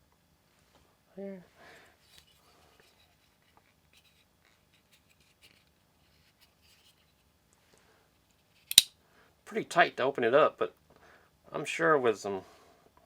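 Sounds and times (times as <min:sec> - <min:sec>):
folding knife rubbing and clicks: 0:04.0 - 0:07.1, 0:08.6 - 0:08.9
knife blade snapping open: 0:08.7 - 0:08.9.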